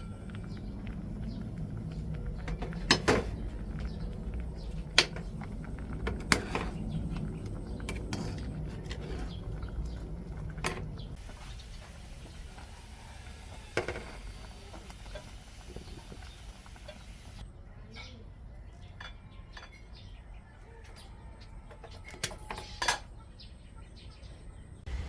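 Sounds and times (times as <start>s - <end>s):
steady low hum: 0.0s - 12.4s
dishes and utensils clinking: 13.8s - 14.2s, 18.9s - 20.0s, 21.8s - 23.1s.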